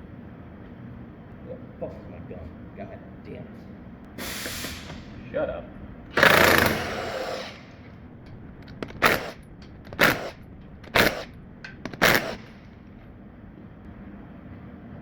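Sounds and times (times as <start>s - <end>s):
impact wrench bursts: 4.2s - 5.2s, 6.1s - 13.1s.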